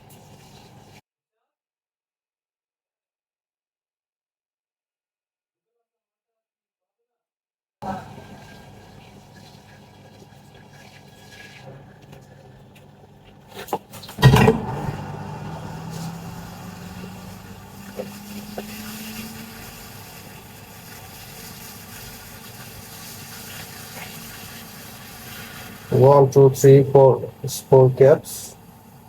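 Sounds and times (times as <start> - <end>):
hot air gun blowing: 13.3 - 26.8.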